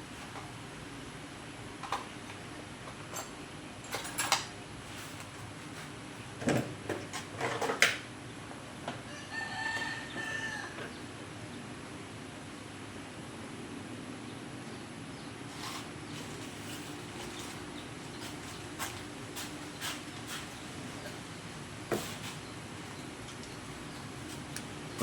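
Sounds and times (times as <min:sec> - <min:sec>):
rooster crowing: 0:09.0 - 0:11.0.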